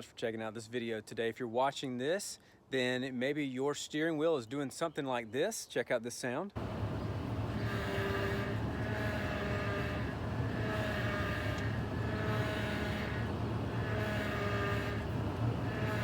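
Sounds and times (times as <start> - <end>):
power steering pump whining: 6.6 - 16.0
truck engine idling: 6.6 - 16.0.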